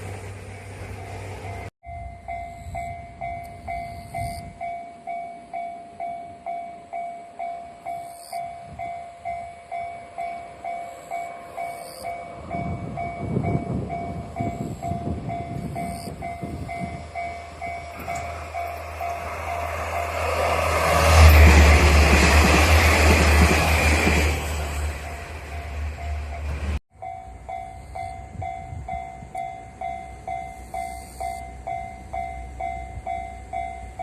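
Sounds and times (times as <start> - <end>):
train wheels clattering on rails: 10.2 - 26.8.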